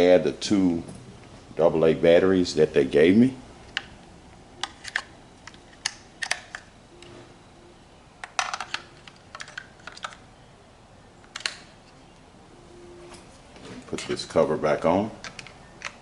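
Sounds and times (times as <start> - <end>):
batteries clicking into compartment: 4.6 - 6.7, 8.2 - 10.2, 11.3 - 12.0, 15.2 - 16.0.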